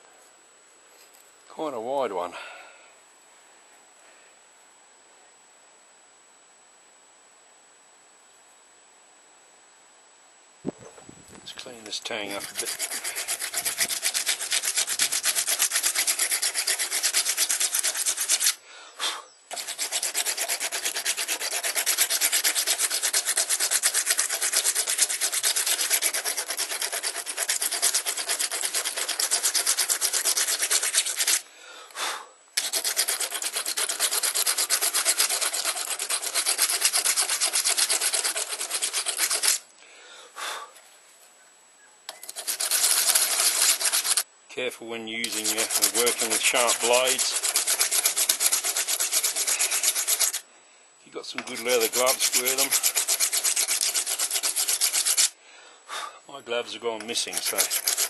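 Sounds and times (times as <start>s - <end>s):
abrasive scrubbing metal blade: 11.9s - 18.6s, 19.5s - 31.4s, 32.6s - 39.6s, 42.2s - 44.2s, 45.2s - 50.4s, 51.3s - 55.4s, 56.9s - 58.0s.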